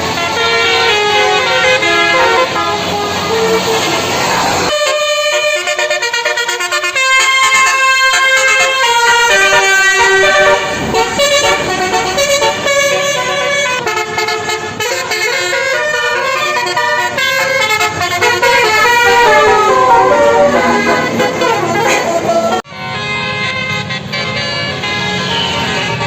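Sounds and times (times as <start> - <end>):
musical bus air horn tune: 0.0 - 26.0.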